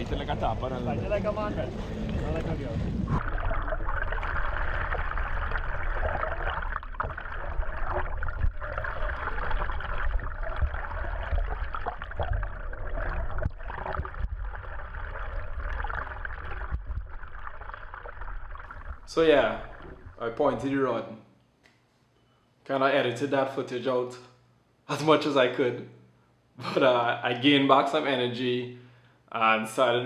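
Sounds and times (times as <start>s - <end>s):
wind rumble on microphone: 0.0s - 3.2s
water rushing along boat hull: 0.0s - 20.2s.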